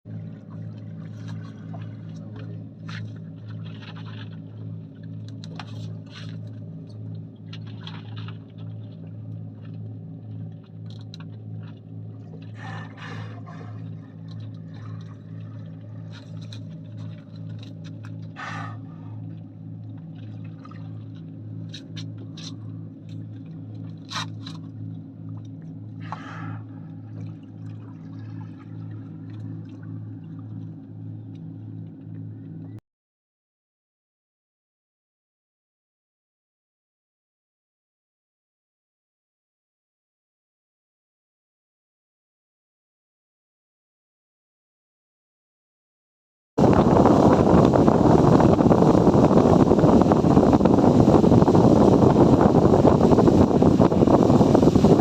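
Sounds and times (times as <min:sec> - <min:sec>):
boat engine idling: 0:00.1 - 0:32.8, 0:46.6 - 0:55.0
water splashing against hull: 0:00.1 - 0:32.8, 0:46.6 - 0:55.0.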